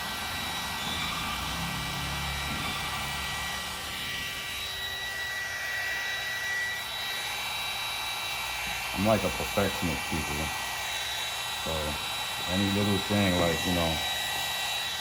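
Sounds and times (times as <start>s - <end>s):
heat gun blowing and whining: 0.0s - 15.0s.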